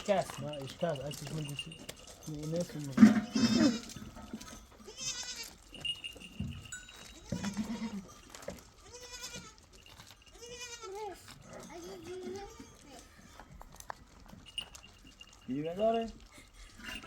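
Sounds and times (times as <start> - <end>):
goats bleating: 2.9 - 5.9, 7.1 - 9.7, 10.3 - 11.4, 12.0 - 13.2.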